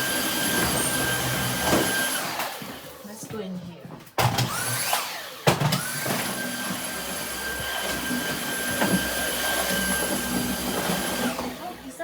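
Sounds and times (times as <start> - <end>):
stick vacuum running: 0.0 - 3.0, 4.2 - 12.0.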